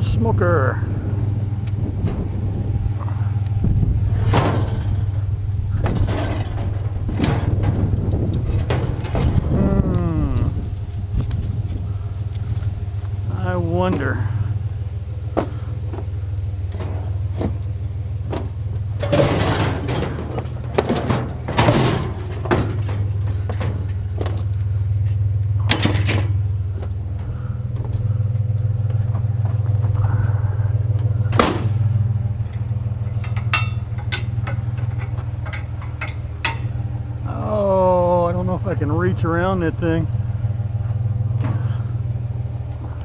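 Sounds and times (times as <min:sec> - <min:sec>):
truck engine idling: 0:00.0 - 0:43.0
knocks and clatter: 0:01.6 - 0:09.7, 0:15.3 - 0:37.0.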